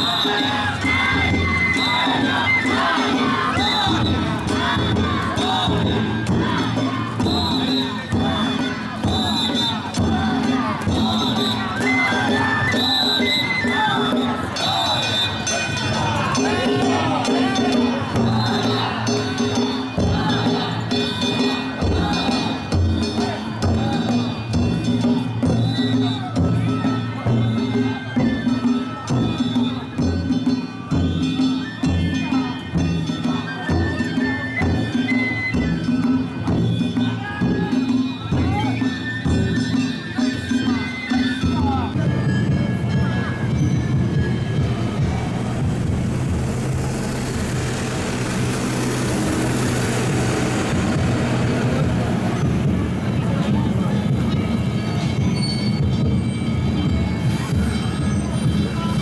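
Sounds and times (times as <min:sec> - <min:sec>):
taiko drum beating: 0:00.0 - 0:14.8, 0:15.7 - 0:32.1, 0:41.5 - 0:54.7
train passing: 0:43.3 - 0:54.6.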